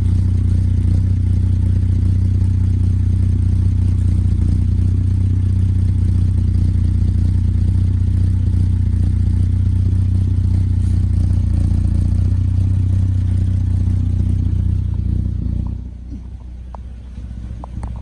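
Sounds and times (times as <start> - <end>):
car engine idling: 0.0 - 18.0.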